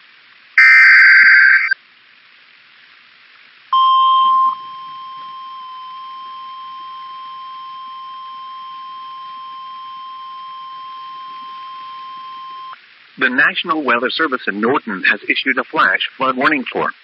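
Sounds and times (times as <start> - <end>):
faint hiss: 0.0 - 17.0
steady alarm tone: 0.6 - 1.8.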